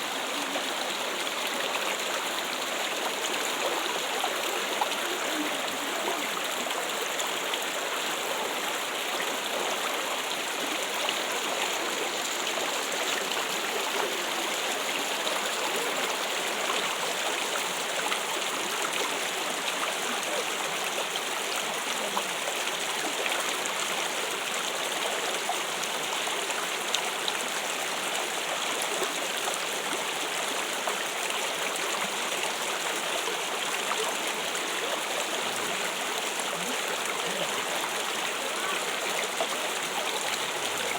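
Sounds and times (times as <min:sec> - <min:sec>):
water trickling and running: 0:00.0 - 0:40.9.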